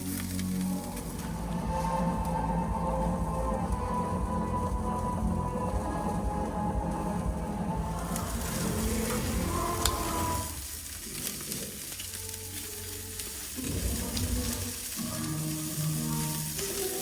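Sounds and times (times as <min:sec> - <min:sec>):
chicken sizzling on a grill: 0:00.0 - 0:17.0.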